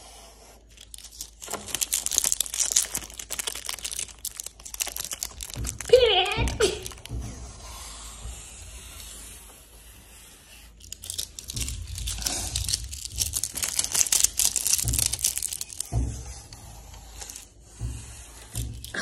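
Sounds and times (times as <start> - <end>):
plastic film crackling and tearing: 0.6 - 7.3, 10.7 - 17.6, 18.4 - 19.0.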